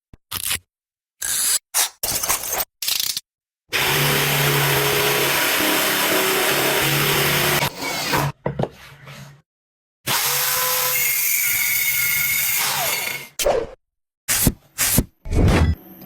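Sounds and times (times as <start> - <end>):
electric power tool running: 3.8 - 8.2.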